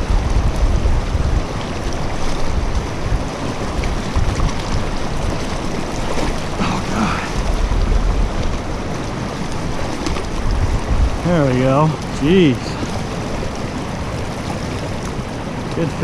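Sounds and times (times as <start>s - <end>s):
creek water rushing: 0.0s - 16.0s
wind buffeting microphone: 0.0s - 16.0s.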